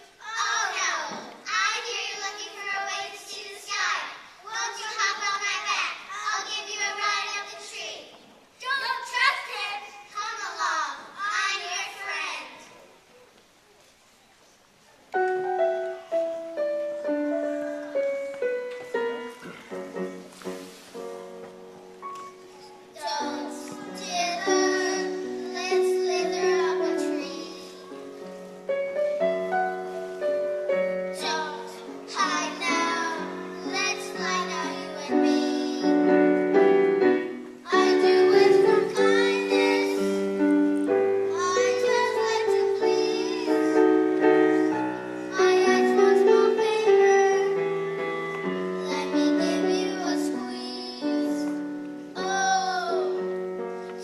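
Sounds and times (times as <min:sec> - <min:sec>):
instrumental accompaniment: 0:15.1 - 0:54.0.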